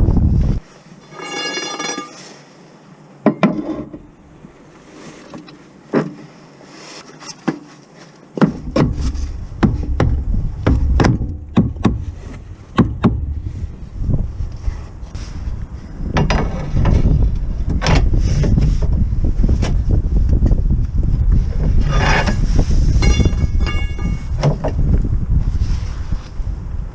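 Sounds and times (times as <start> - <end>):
sharp knocks and clicks: 8.4 - 12.1, 12.8 - 13.4
low rumble: 8.9 - 26.9.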